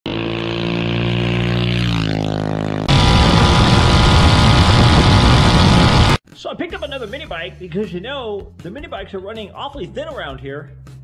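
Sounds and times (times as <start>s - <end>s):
mini bike engine revving: 0.1s - 6.1s.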